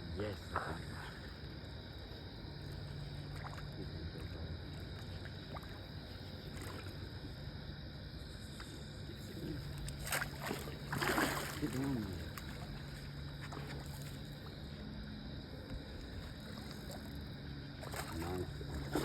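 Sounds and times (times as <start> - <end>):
steady low hum: 0.0 - 19.0
water moving at river's edge: 0.0 - 19.0
sharp water splash: 10.0 - 12.1.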